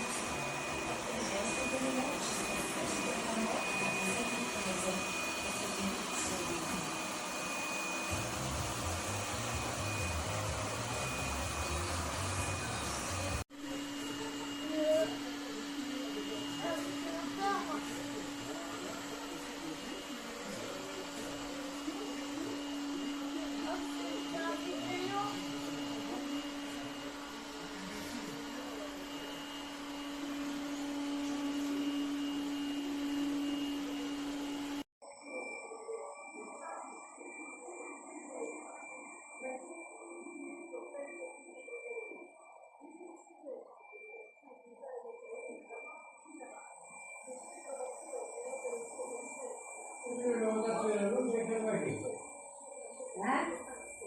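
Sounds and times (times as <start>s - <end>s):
robot vacuum whirring: 0.0s - 42.2s, 45.0s - 54.0s.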